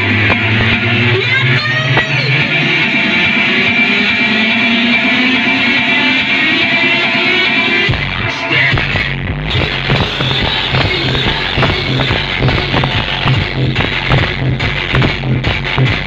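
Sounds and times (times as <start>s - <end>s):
loud amplified music with guitar lead: 0.0s - 16.0s.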